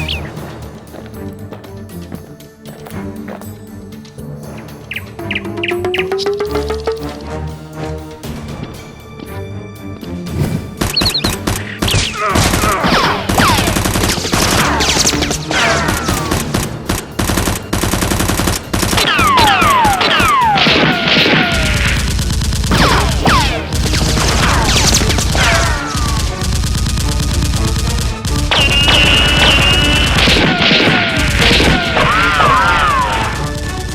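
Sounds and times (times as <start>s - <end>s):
machine gun fire: 10.8s - 33.9s
falling whistle tones: 28.6s - 30.2s.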